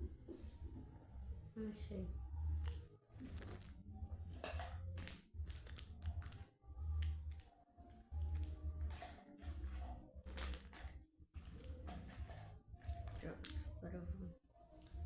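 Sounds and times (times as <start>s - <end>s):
packaging crinkling and clicking: 2.6s - 3.8s, 4.5s - 7.5s, 10.2s - 11.8s, 12.8s - 13.8s.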